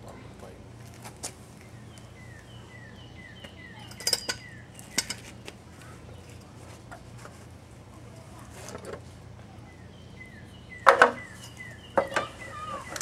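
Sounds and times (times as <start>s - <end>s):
metallic clinks: 3.9s - 5.2s
high falling chirp: 10.2s - 13.0s.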